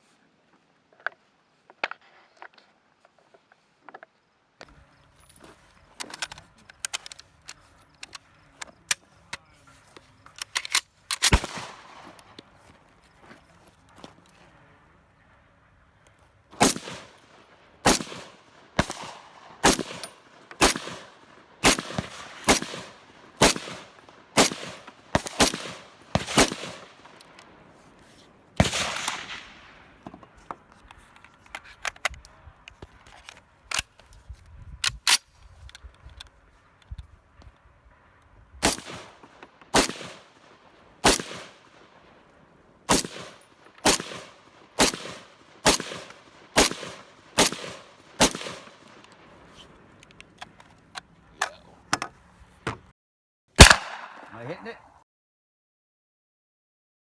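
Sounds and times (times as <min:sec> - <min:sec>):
gunshots: 0:10.6 - 0:12.4, 0:16.6 - 0:27.0, 0:28.6 - 0:30.0, 0:38.6 - 0:41.9, 0:42.9 - 0:49.0, 0:53.6 - 0:54.7.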